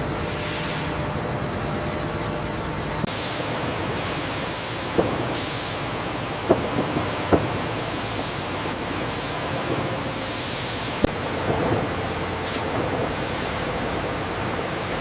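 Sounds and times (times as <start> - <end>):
industrial machinery hissing: 3.1 - 15.0.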